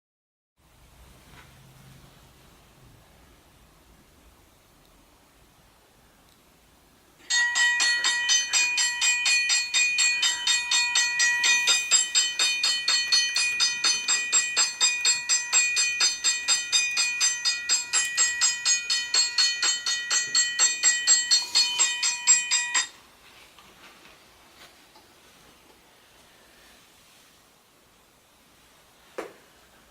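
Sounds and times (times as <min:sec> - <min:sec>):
bell ringing rapidly: 0:07.2 - 0:22.9.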